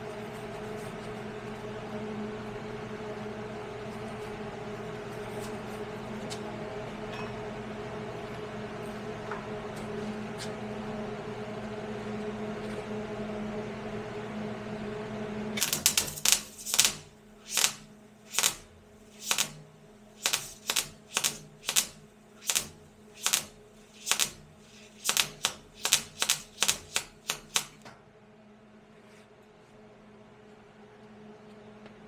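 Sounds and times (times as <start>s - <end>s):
short sharp clicks: 15.6s - 19.6s, 20.2s - 27.8s
steady hum: 15.6s - 27.8s.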